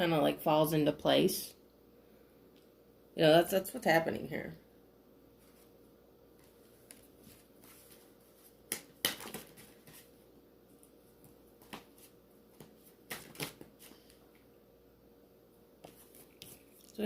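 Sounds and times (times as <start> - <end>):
cards snapping and slapping: 8.7 - 10.0, 12.6 - 13.9.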